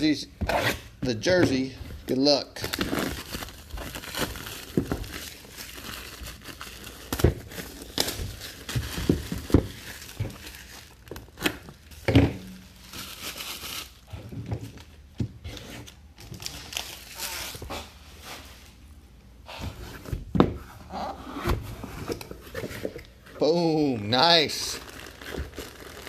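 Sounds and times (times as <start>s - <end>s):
packaging crinkling and tearing: 2.1s - 12.0s, 12.6s - 15.0s, 15.8s - 17.9s, 23.7s - 26.0s.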